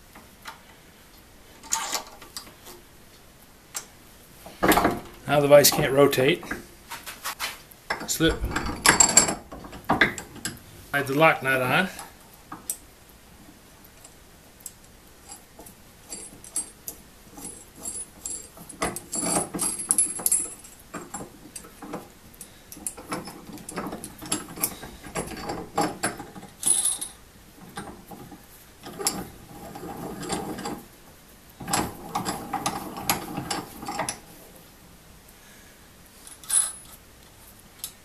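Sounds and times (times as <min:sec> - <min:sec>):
small metal parts clicking and rattling: 0:15.2 - 0:30.8, 0:36.2 - 0:37.0.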